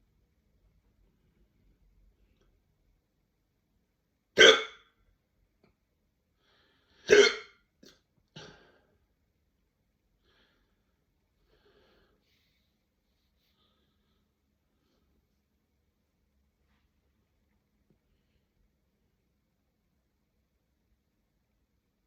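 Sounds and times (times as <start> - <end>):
person hiccuping: 4.4 - 4.8, 7.1 - 8.0.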